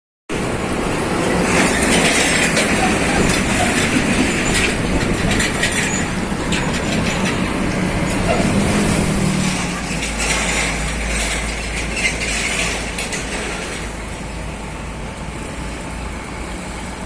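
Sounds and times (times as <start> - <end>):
truck engine hum: 0.3 - 17.0
metallic clatter and rattling: 1.2 - 14.4.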